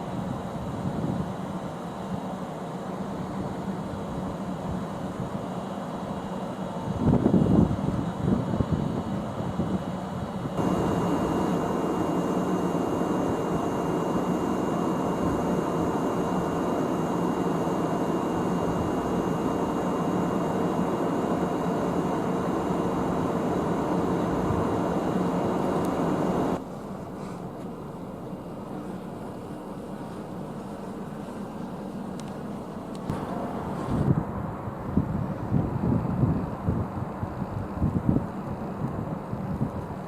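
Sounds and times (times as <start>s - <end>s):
steady mechanical rush with hum: 0.0s - 40.0s
thin high steady tone: 10.6s - 26.6s.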